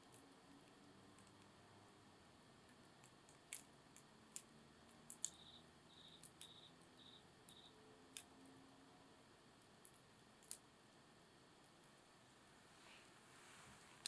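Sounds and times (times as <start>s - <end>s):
insect chirping: 5.1s - 7.8s.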